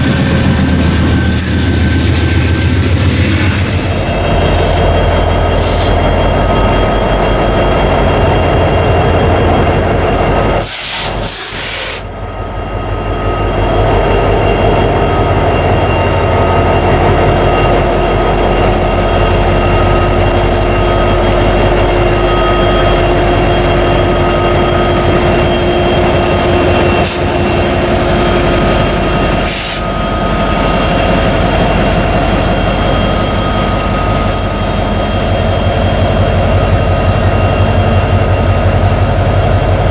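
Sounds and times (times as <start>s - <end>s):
train wheels clattering on rails: 0.0s - 12.1s
high thin ringing tone: 18.7s - 39.8s.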